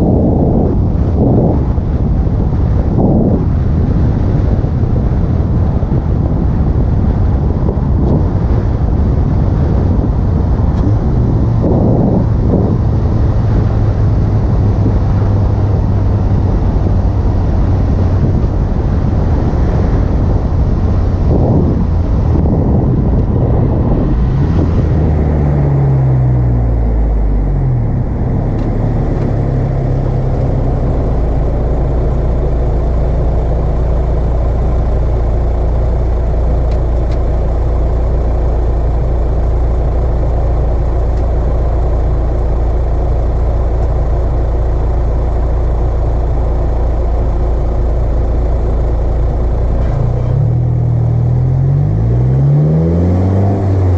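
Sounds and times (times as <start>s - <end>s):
car engine drone: 0.0s - 53.9s.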